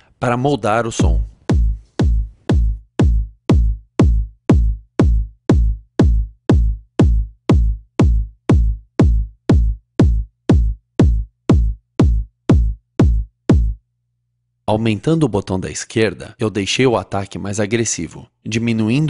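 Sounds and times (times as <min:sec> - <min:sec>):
electronic kick drum: 0:01.0 - 0:13.8.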